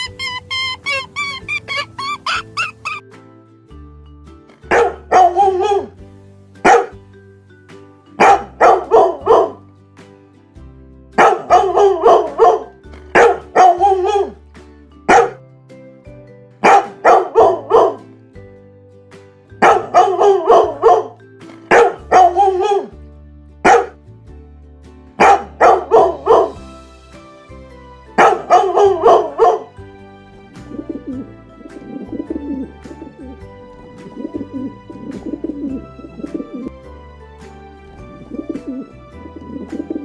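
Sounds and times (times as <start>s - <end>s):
background music: 0.0s - 40.0s
dog barking: 4.7s - 5.9s, 6.6s - 6.9s, 8.2s - 9.6s, 11.2s - 14.4s, 15.1s - 15.4s, 16.6s - 18.0s, 19.6s - 21.1s, 21.7s - 22.9s, 23.6s - 24.0s, 25.2s - 26.6s.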